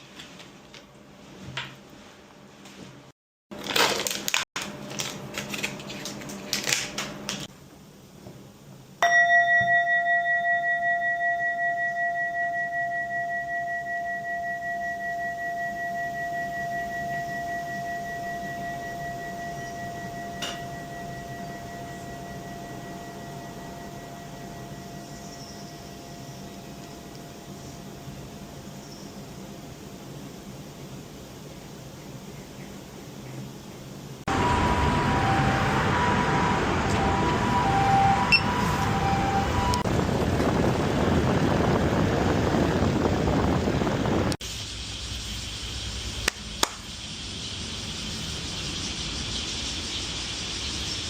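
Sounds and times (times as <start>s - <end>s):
bell ringing: 9.0s - 26.2s, 34.3s - 39.8s.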